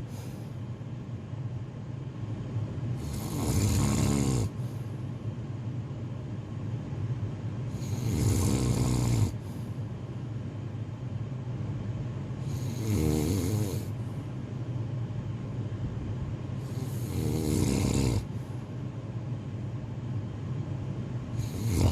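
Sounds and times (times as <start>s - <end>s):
person snoring: 3.0s - 4.6s, 7.7s - 9.4s, 12.4s - 14.0s, 16.6s - 18.3s, 21.4s - 21.9s.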